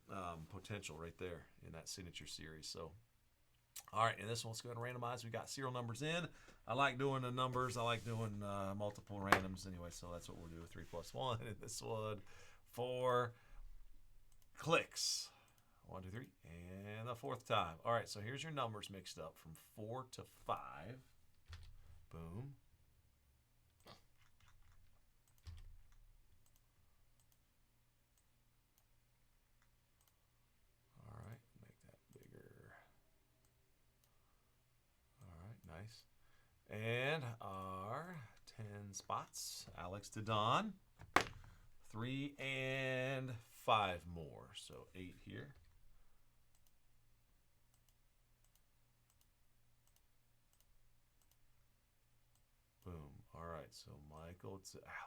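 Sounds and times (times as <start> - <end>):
computer mouse clicks: 46.5 - 46.8, 47.7 - 51.4.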